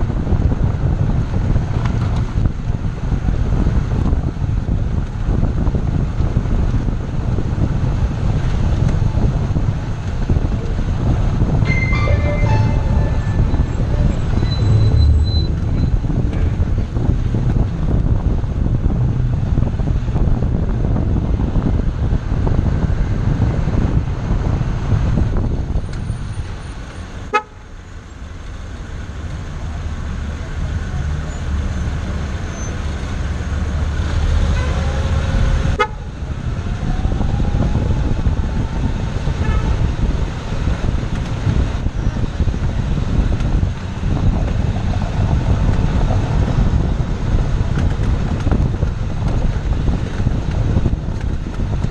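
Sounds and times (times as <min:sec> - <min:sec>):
road and wind noise in car: 0:00.0 - 0:51.9
short pitched horn-like tone: 0:11.6 - 0:16.6
rising tone: 0:11.6 - 0:17.0.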